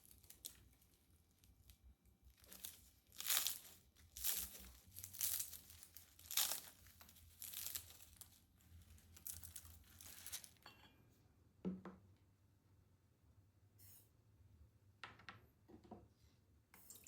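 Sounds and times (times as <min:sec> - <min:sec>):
crinkling and rustling: 0:00.0 - 0:10.6.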